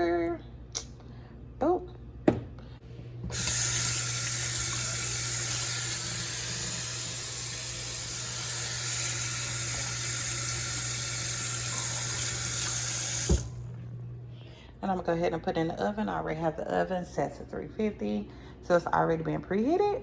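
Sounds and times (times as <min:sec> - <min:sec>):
faucet running into sink: 0:03.3 - 0:14.0.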